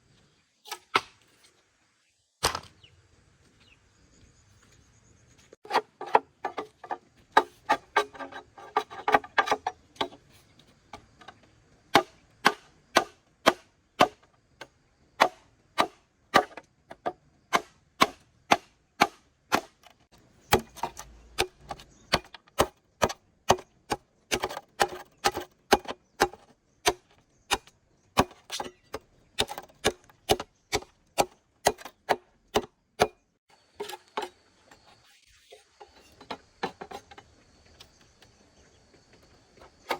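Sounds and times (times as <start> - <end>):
blade chopping wood: 0.7 - 1.2, 2.4 - 2.8, 11.9 - 33.2.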